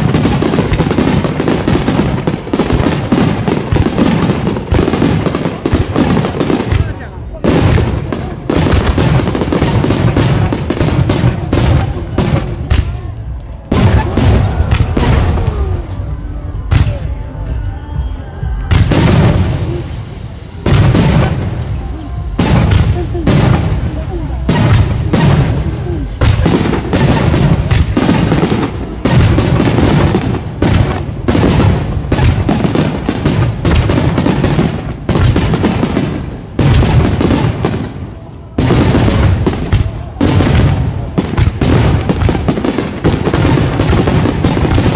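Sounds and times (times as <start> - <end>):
fireworks bursting: 0.0 - 44.9
fireworks rumble and crackle: 0.0 - 44.9
music playing: 12.9 - 27.2
firework shells bursting: 18.7 - 38.0.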